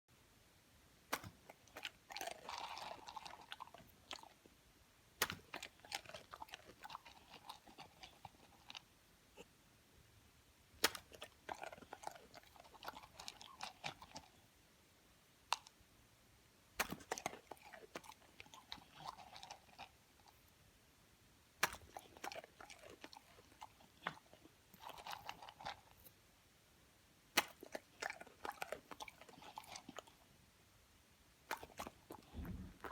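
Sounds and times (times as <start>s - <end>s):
dog chewing crunchily: 1.1s - 4.4s, 5.2s - 8.8s, 10.8s - 14.4s, 16.8s - 20.3s, 21.6s - 26.1s, 27.4s - 30.2s, 31.5s - 32.9s
dog snapping at treats: 5.2s - 5.7s, 10.8s - 11.3s.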